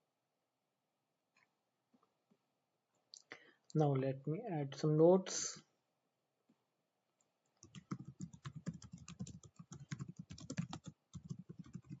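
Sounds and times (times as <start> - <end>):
keyboard typing clicks: 7.6 - 12.0.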